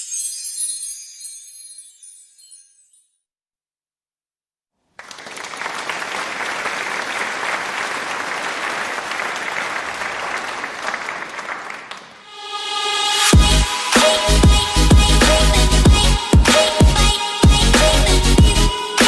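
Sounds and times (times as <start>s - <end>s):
applause: 4.9s - 12.3s
electronic music with heavy beat: 13.0s - 19.0s.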